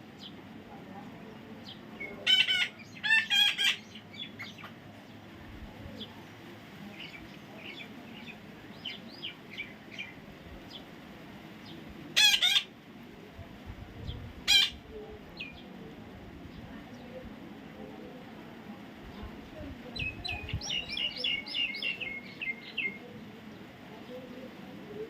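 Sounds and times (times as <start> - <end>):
parrot squawking: 2.2 - 4.0, 12.2 - 12.7, 14.5 - 14.8
parrot chirping: 2.2 - 4.6.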